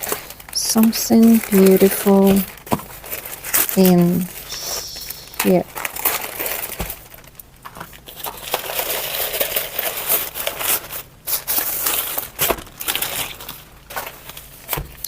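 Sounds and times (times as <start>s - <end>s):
packaging crinkling and rustling: 0.0s - 15.0s.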